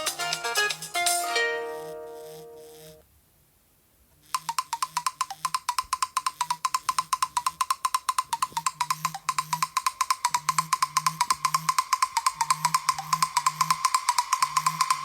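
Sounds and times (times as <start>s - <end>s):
phone ringtone ticks over low tone: 4.4s - 15.0s.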